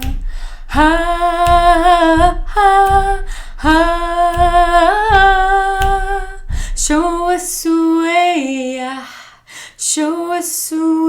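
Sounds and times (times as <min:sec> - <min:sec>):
low thumps: 0:00.0 - 0:08.0
woman singing a cappella: 0:00.0 - 0:11.0
singer breathing: 0:00.2 - 0:00.7, 0:03.2 - 0:03.6, 0:06.5 - 0:06.8.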